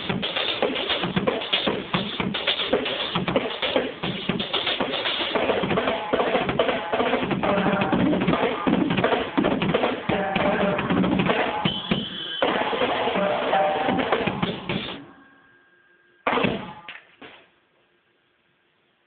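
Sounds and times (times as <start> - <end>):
drum kit groove: 0.0 - 15.0.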